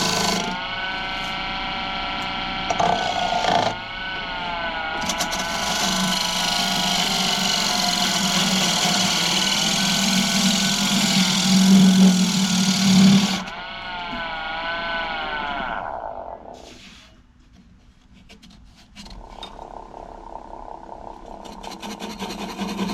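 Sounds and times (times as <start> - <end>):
lathe motor humming: 0.0 - 16.6.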